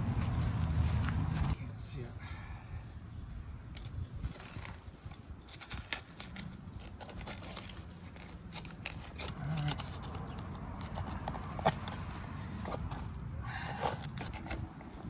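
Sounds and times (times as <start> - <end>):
scraping in sandy soil: 0.0 - 1.7.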